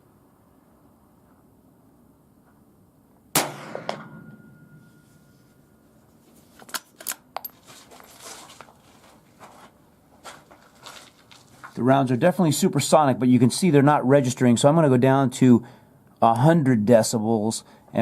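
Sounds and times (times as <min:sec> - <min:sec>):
rifle shot with ringing tail: 0:03.3 - 0:05.3.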